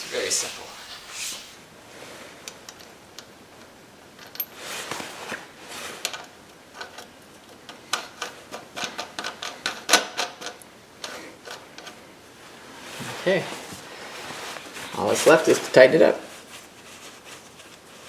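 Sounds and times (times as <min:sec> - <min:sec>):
short rubbing swishes: 0:00.0 - 0:01.6.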